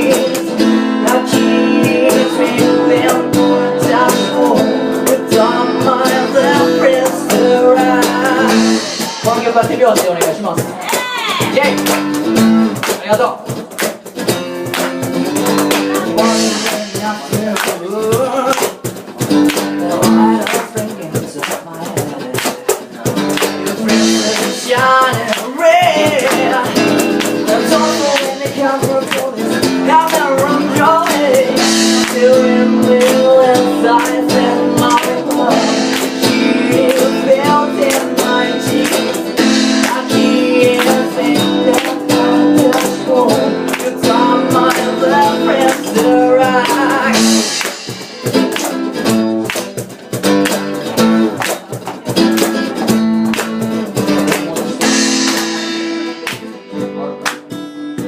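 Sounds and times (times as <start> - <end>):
live band playing: 0.0 - 58.0.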